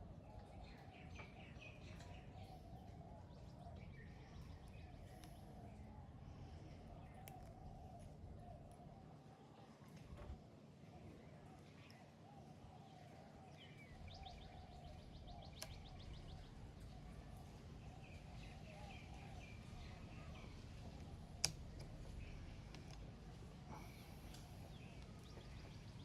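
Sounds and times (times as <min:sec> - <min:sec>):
faint birds chirping: 0:00.0 - 0:26.0
steady low hum: 0:11.2 - 0:26.0.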